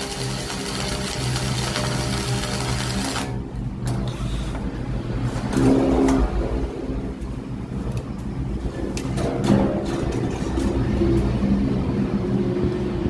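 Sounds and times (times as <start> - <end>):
welding arc buzzing and hissing: 0.0 - 4.7
welding machine hum: 0.0 - 6.2.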